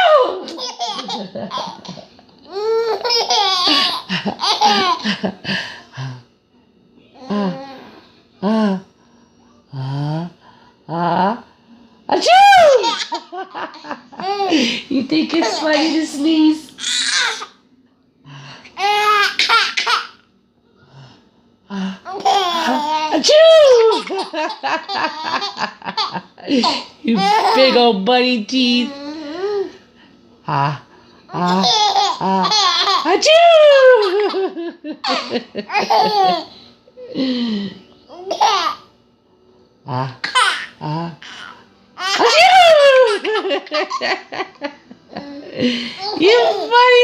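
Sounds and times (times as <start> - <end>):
baby laughing: 0.4 - 5.2, 12.6 - 14.7, 15.4 - 16.0, 18.8 - 20.1, 22.1 - 27.8, 31.4 - 36.5, 38.1 - 38.8, 40.2 - 44.4, 45.1 - 46.8.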